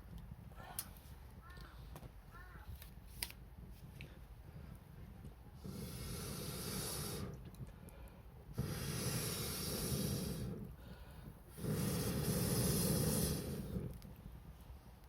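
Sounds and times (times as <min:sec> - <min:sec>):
breathy puffs of air blown: 0:05.5 - 0:14.2.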